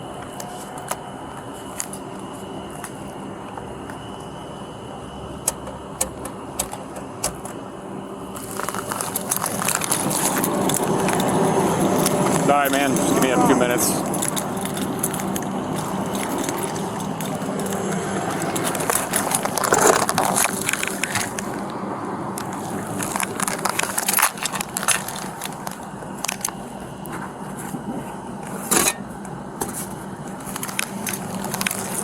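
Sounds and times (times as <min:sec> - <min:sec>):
steady low hum: 0:00.0 - 0:32.0
rustling and scraping: 0:08.3 - 0:21.7, 0:22.4 - 0:29.0, 0:29.6 - 0:32.0.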